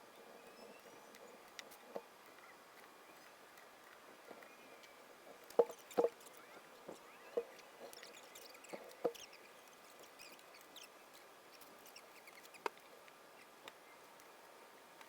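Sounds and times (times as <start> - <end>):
faint high squeaks: 5.6 - 12.7.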